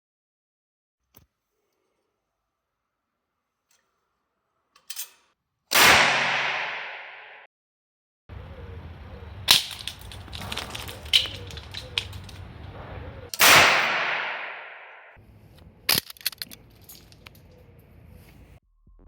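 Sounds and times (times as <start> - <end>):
sharp crack: 5.7 - 7.4, 8.3 - 15.2
sharp bang: 12.4 - 15.1
loud blast: 12.6 - 15.1.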